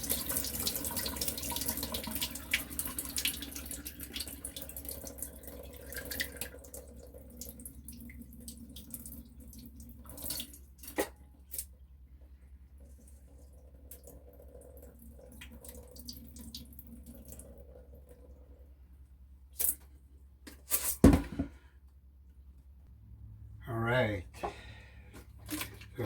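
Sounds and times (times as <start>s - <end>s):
water dripping: 0.0s - 11.7s, 12.7s - 19.8s
water pouring into a sink: 0.0s - 11.7s, 12.7s - 18.8s.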